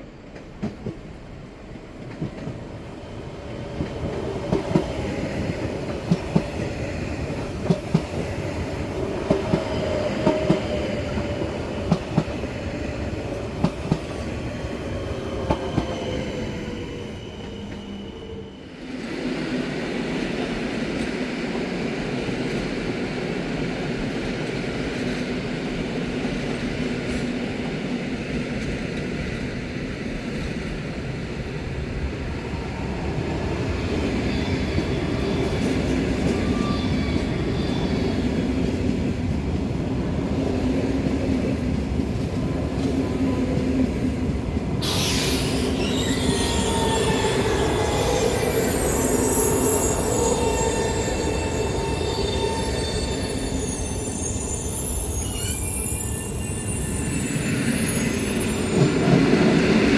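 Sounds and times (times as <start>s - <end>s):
sharp hiss: 44.8s - 46.0s
wheel squeal: 44.8s - 59.3s.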